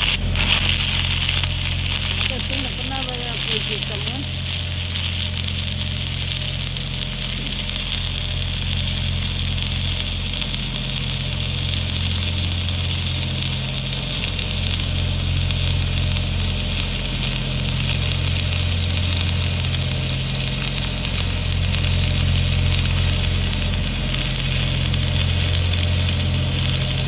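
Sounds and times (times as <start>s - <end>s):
welding arc crackling hiss: 0.0s - 27.0s
welding machine hum: 0.0s - 27.0s.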